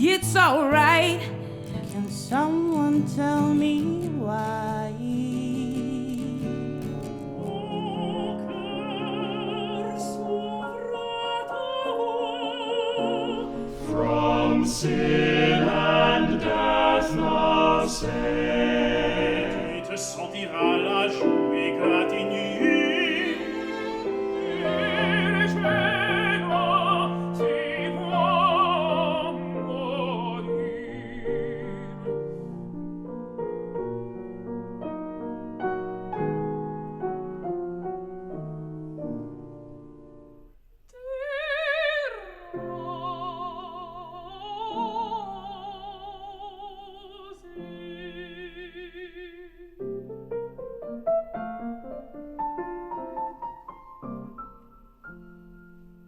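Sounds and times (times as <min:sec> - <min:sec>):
classical singing with vibrato: 0:00.0 - 0:33.0, 0:40.9 - 0:50.2
piano accompaniment: 0:00.0 - 0:40.6, 0:49.8 - 0:56.0.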